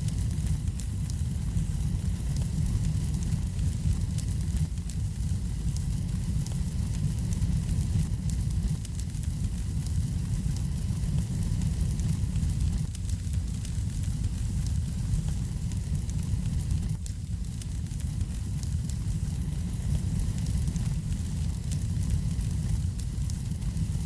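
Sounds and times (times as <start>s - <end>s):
low rumble of flames: 0.0s - 24.0s
wood fire crackling and popping: 0.0s - 24.0s.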